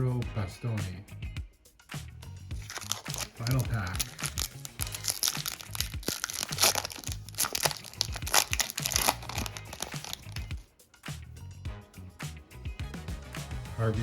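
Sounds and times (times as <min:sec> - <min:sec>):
wrapper tearing and crinkling: 0:02.6 - 0:10.6.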